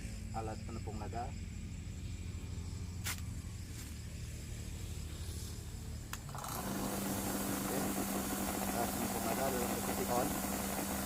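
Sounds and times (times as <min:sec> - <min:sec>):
grinding machine whirring: 0:04.3 - 0:11.0.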